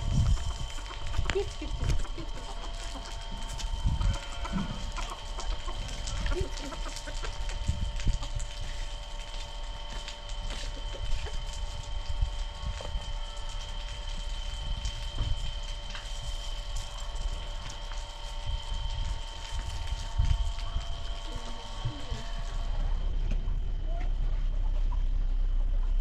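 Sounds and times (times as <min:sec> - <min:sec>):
chickens clucking: 0:00.0 - 0:08.4, 0:10.4 - 0:11.7, 0:23.3 - 0:26.0.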